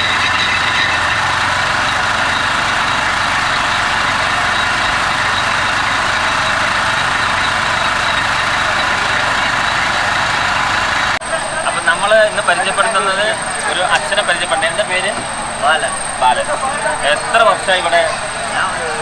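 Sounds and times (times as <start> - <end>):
loud engine drone with hiss: 0.0 - 19.0.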